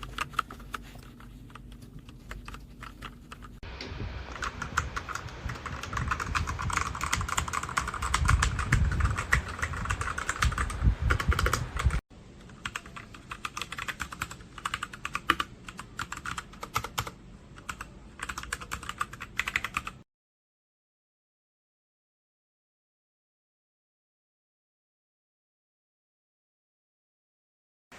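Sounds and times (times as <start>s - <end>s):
mechanical keyboard typing: 0.0s - 3.6s, 4.3s - 20.0s.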